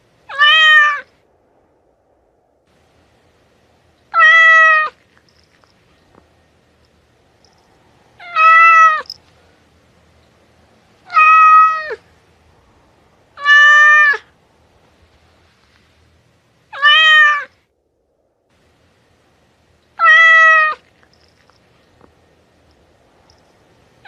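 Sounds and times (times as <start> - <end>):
cat meowing: 0.3 - 1.1, 4.1 - 5.0, 8.2 - 9.2, 11.0 - 12.0, 13.4 - 14.3, 16.7 - 17.5, 20.0 - 20.9.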